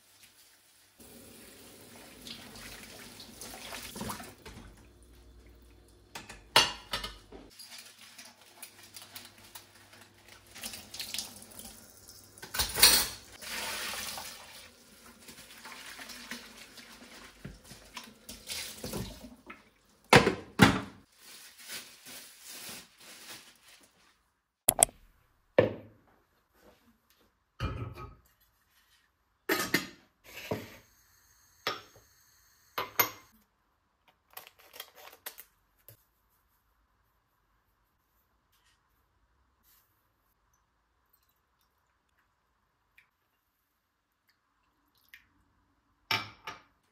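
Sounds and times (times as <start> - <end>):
tap water running: 0.0 - 20.2
dishes and pots set down: 6.2 - 7.5, 27.6 - 28.2.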